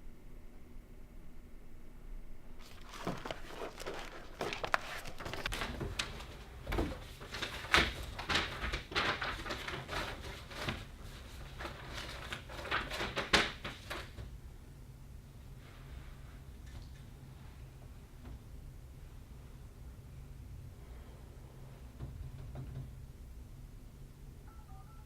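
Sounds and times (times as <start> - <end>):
objects being handled: 2.6 - 7.5.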